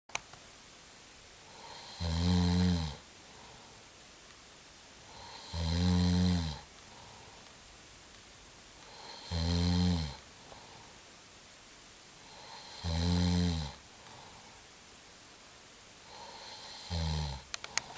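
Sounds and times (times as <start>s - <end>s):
breath hiss: 1.4s - 4.0s, 5.0s - 7.6s, 8.8s - 11.2s, 12.2s - 14.8s, 16.0s - 17.9s
person snoring: 1.5s - 3.0s, 5.1s - 6.7s, 8.8s - 10.2s, 12.2s - 14.4s, 16.1s - 17.9s.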